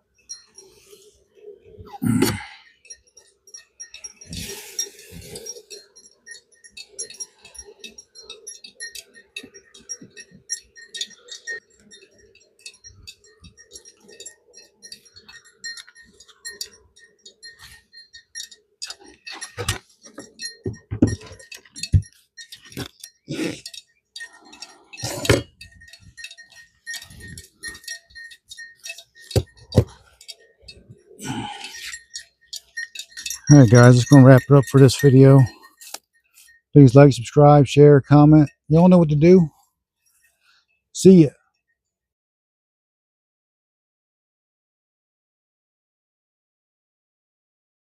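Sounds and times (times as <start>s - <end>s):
high ringing clinks: 0.0s - 39.6s.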